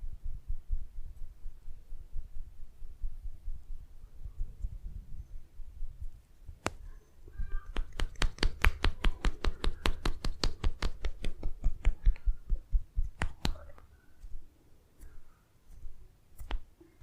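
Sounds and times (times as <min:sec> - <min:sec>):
hands slapping skin: 0:06.6 - 0:06.8, 0:07.6 - 0:14.4, 0:16.3 - 0:16.7.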